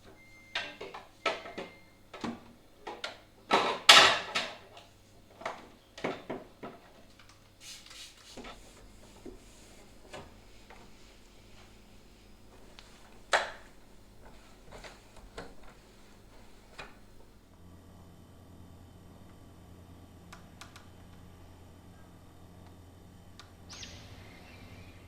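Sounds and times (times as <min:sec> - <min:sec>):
drawer sliding: 0:07.7 - 0:17.4.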